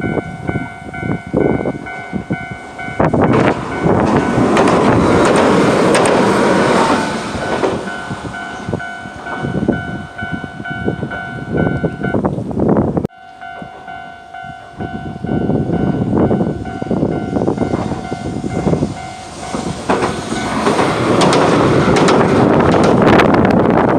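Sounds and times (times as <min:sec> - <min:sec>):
level crossing alarm ringing: 0:00.0 - 0:05.6, 0:07.4 - 0:12.3, 0:13.1 - 0:19.6
train wheel and rail noise: 0:00.0 - 0:23.9.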